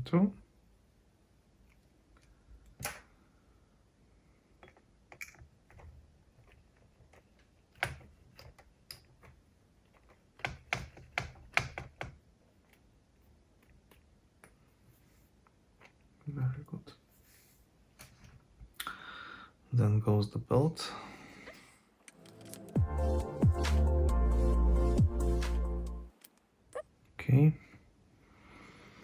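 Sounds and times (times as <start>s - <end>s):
small parts clicking and tapping: 4.6s - 12.9s.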